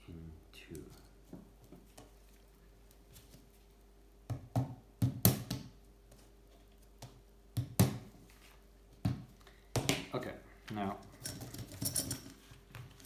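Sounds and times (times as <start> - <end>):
small metal parts clicking: 11.2 - 12.4.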